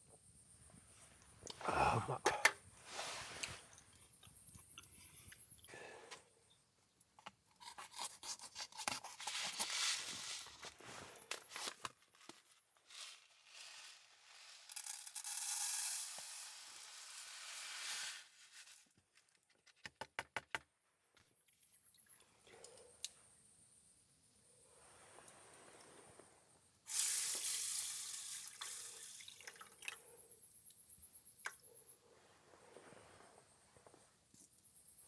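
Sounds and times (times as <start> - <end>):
rubbing and scraping of handling: 7.6 - 14.0.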